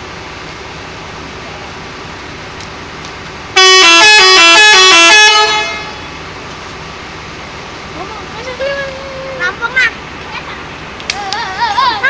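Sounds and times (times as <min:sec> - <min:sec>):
musical bus horn tune: 0:03.6 - 0:06.3.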